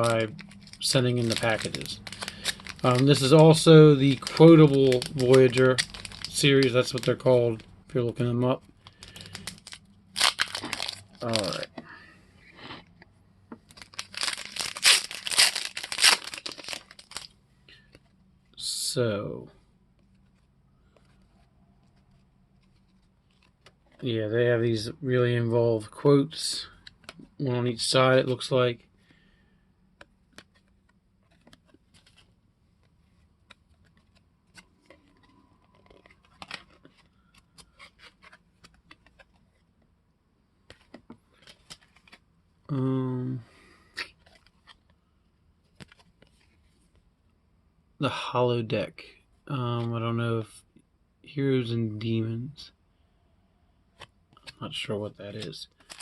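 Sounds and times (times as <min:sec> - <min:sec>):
wrapper tearing and crinkling: 0:00.0 - 0:07.6, 0:08.8 - 0:11.7, 0:13.7 - 0:17.3, 0:55.4 - 0:56.0
trading cards being flipped: 0:00.0 - 0:11.9, 0:12.6 - 0:18.1, 0:20.0 - 0:24.1, 0:30.0 - 0:39.8, 0:40.6 - 0:42.3, 0:43.8 - 0:45.0, 0:45.6 - 0:47.0, 0:53.9 - 0:56.0.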